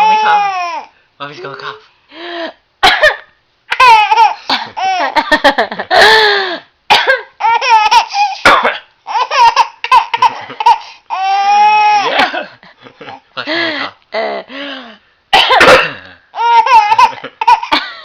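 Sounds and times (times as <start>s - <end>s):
baby laughing: 0.0s - 0.8s, 3.7s - 5.6s, 7.4s - 8.4s, 9.1s - 12.4s, 16.4s - 17.9s
woman coughing: 2.8s - 3.3s, 4.5s - 4.8s, 6.9s - 7.3s, 8.4s - 8.8s, 12.0s - 12.6s, 15.3s - 16.0s.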